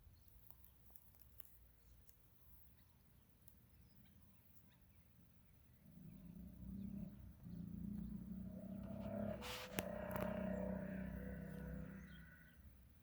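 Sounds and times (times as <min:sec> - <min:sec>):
low hum: 0:05.7 - 0:12.9.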